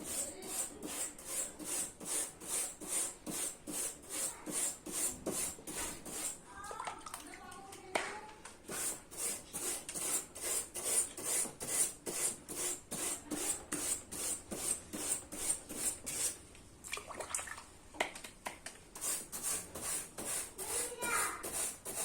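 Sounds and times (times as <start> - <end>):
wire brush scrubbing metal fins: 0.0 - 6.4, 8.7 - 16.4, 19.0 - 22.0.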